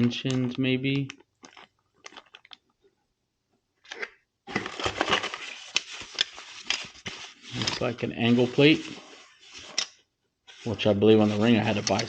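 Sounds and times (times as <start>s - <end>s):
packaging rustling: 4.5s - 9.8s, 10.5s - 12.0s.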